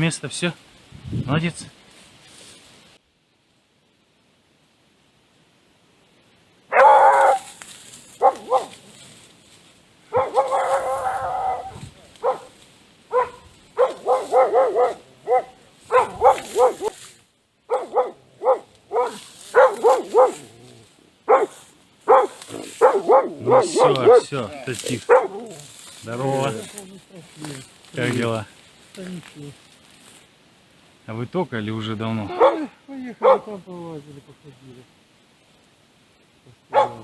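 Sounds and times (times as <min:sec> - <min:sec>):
dog barking: 0:06.7 - 0:07.5, 0:08.2 - 0:08.8, 0:10.1 - 0:17.0, 0:17.7 - 0:20.6, 0:21.3 - 0:24.4, 0:25.0 - 0:25.7, 0:32.3 - 0:33.6, 0:36.7 - 0:37.0.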